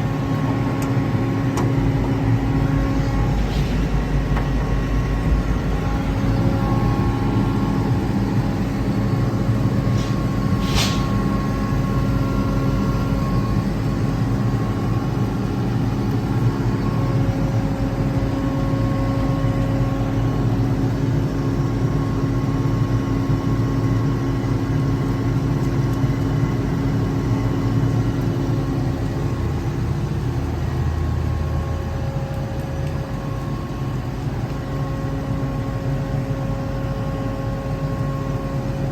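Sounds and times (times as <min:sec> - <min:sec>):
air compressor humming: 0:00.0 - 0:20.6.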